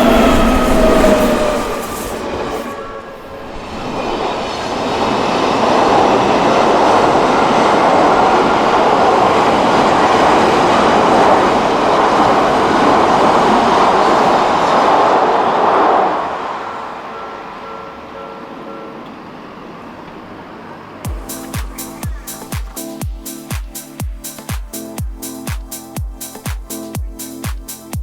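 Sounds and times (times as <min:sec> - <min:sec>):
train wheels rumbling on rails: 0:00.0 - 0:16.6.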